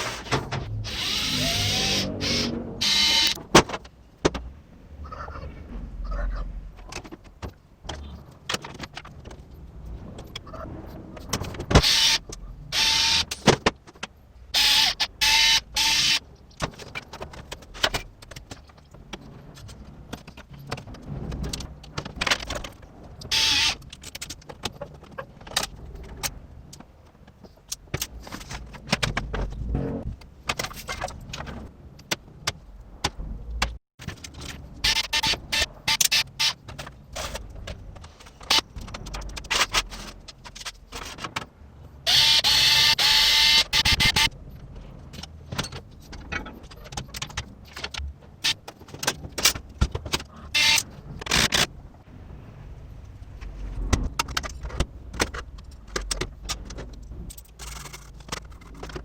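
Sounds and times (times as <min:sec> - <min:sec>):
small motor whirring: 0:00.8 - 0:03.4, 0:11.8 - 0:13.3, 0:14.6 - 0:16.2, 0:42.1 - 0:44.3
small hard parts clicking: 0:30.2 - 0:51.7, 0:53.9 - 0:59.0.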